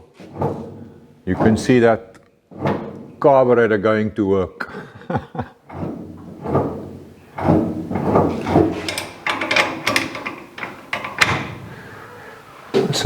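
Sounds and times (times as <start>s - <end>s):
gas pedal linkage clunks and creaks: 0.2s - 3.3s, 5.3s - 12.0s.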